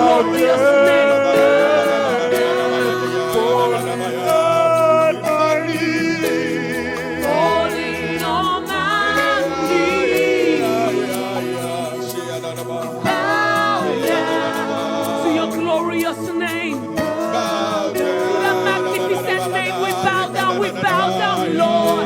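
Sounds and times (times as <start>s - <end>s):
singers holding long notes: 0.0s - 22.0s
sustained musical accompaniment: 0.0s - 22.0s.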